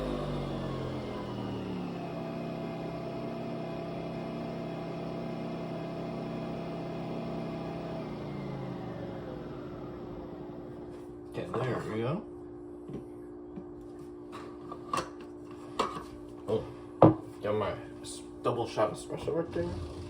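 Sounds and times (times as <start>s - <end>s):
coffee machine motor humming: 0.0s - 11.8s, 19.2s - 20.0s.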